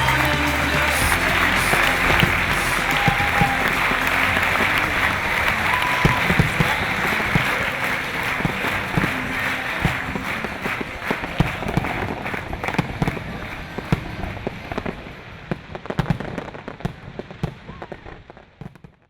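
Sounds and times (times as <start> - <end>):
audience applauding: 0.0 - 15.1.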